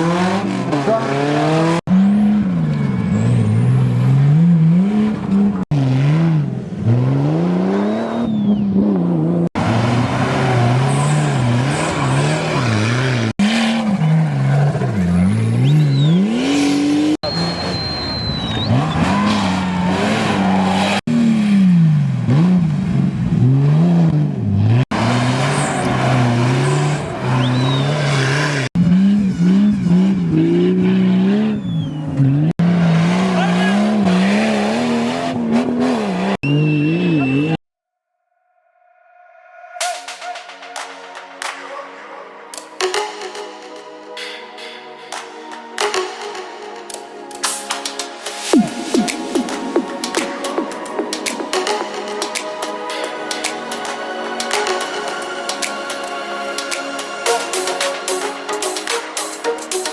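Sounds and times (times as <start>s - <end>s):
race vehicle engines revving: 0.0s - 37.6s.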